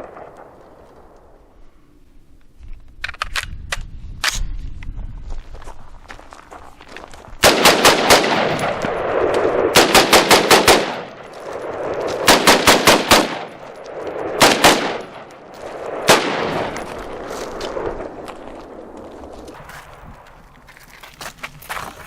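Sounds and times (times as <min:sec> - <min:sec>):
gunshot echo: 0:07.4 - 0:13.7, 0:14.3 - 0:18.2
rifle firing semi-automatic shots: 0:07.4 - 0:19.0.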